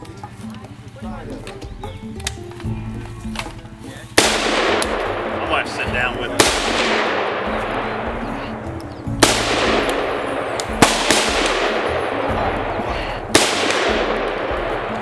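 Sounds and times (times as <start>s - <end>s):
rifle shots with echo: 4.2s - 15.0s.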